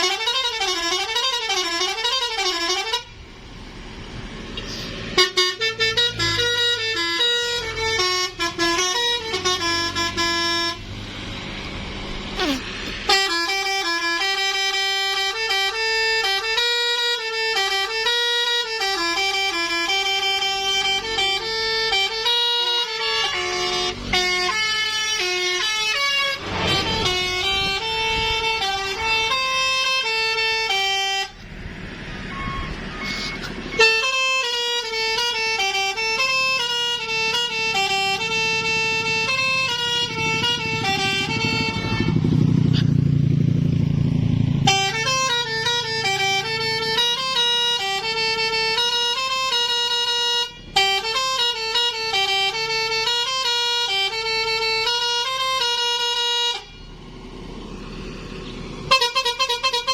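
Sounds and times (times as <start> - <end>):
multi-tone air horn melody: 0.0 - 3.2, 4.6 - 10.8, 12.4 - 31.4, 32.3 - 43.0, 44.6 - 56.8, 58.9 - 59.9.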